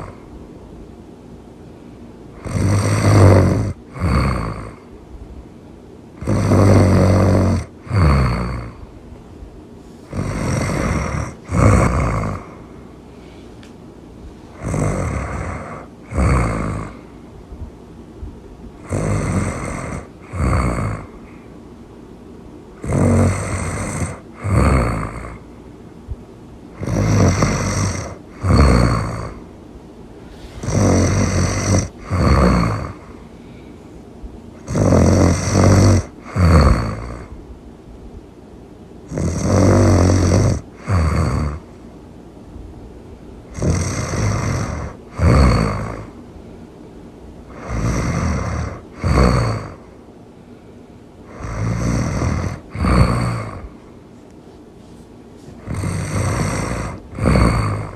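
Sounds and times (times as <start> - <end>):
loud snoring: 0.0 - 0.3, 2.4 - 4.9, 6.2 - 8.8, 10.1 - 12.8, 14.5 - 17.2, 18.8 - 21.4, 22.8 - 25.5, 26.7 - 29.5, 30.2 - 33.3, 34.6 - 37.3, 39.0 - 41.8, 43.5 - 46.2, 47.5 - 50.0, 51.2 - 53.8, 55.6 - 57.9.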